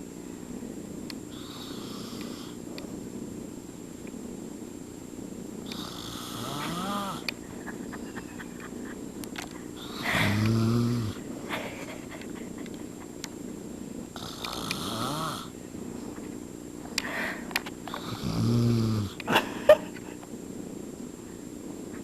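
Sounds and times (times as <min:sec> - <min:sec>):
man snoring: 0:01.4 - 0:02.6, 0:05.7 - 0:07.3, 0:09.8 - 0:11.2, 0:14.2 - 0:15.5, 0:17.9 - 0:19.2.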